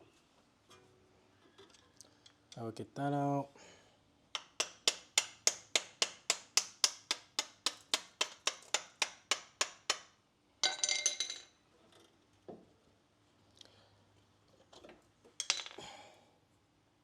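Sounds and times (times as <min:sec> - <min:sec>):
hammer tapping metal punch: 0:04.4 - 0:10.1.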